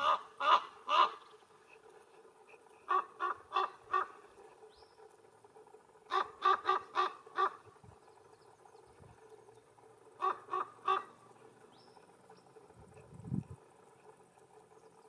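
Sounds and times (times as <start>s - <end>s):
raven croaking: 10.2s - 11.3s.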